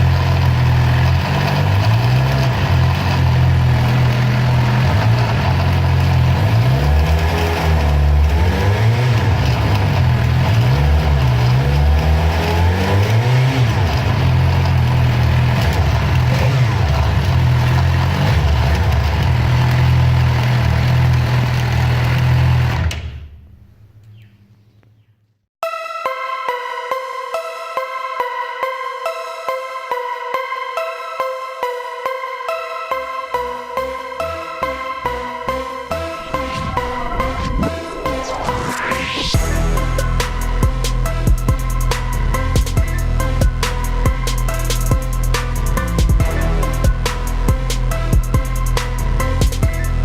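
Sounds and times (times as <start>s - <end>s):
motorcycle engine revving: 0.0s - 23.6s, 34.2s - 50.0s.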